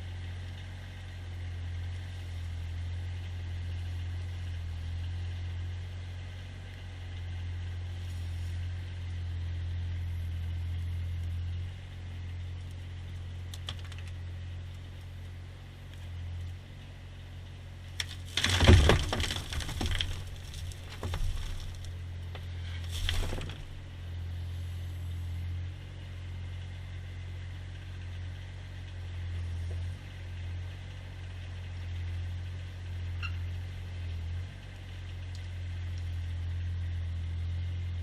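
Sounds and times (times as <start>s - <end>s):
engine humming: 0.0s - 38.0s
crash and rattle: 18.0s - 24.2s.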